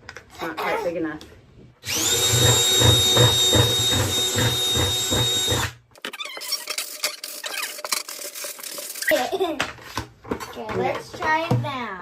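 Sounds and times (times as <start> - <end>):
power drill whining through plastic: 1.8 - 5.8.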